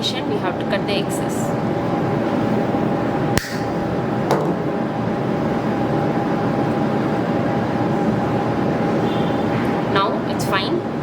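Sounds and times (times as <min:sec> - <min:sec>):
room hum: 0:00.0 - 0:11.0
wire cutter clicking: 0:03.4 - 0:03.8.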